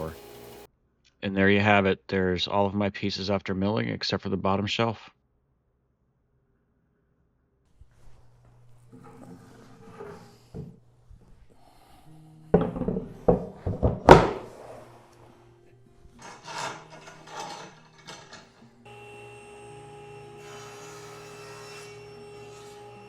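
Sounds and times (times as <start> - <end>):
wooden boards knocking: 12.6 - 14.5.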